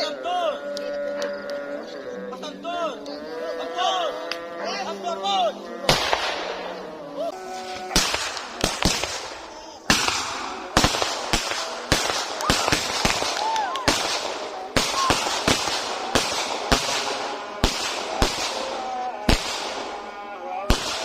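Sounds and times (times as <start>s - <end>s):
firework bangs: 5.9s - 6.8s, 7.6s - 20.1s, 20.7s - 21.0s
crackling hiss of fireworks: 7.4s - 21.0s.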